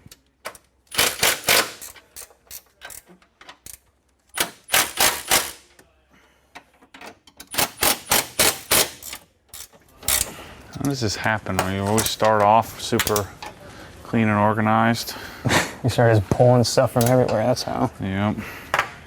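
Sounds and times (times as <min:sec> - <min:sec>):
socket ratchet clicking: 0:00.5 - 0:05.6, 0:07.4 - 0:10.3.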